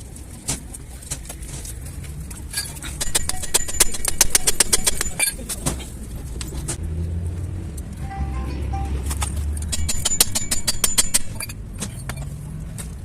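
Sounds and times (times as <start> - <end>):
sharp metallic clicks: 3.0 - 5.4, 9.1 - 11.6.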